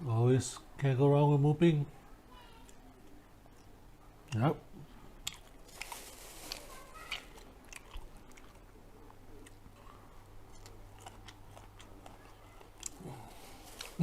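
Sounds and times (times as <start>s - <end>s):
person chewing: 5.2s - 14.0s.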